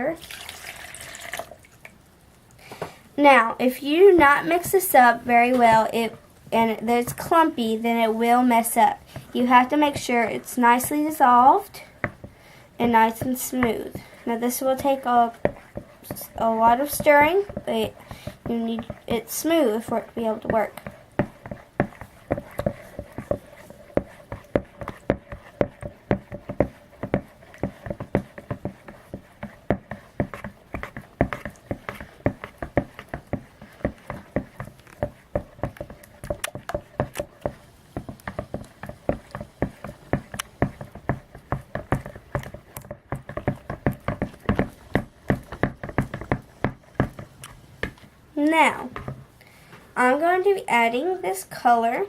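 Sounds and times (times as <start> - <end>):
mixing tool scraping a bowl: 3.3 - 49.1.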